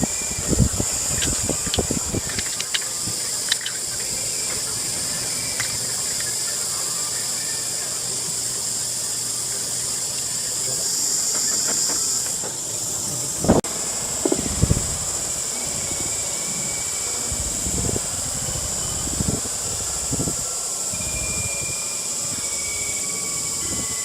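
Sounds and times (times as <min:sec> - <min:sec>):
high-pitched hiss: 0:00.0 - 0:24.0
faint clicks: 0:01.1 - 0:06.6.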